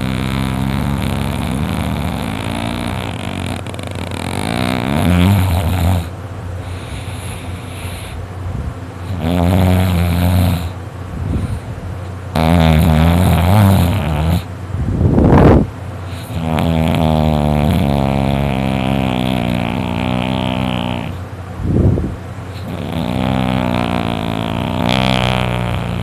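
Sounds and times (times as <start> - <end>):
boy snoring loudly: 0.0 - 6.1, 9.1 - 10.8, 12.4 - 14.5, 16.1 - 21.2, 22.6 - 26.0.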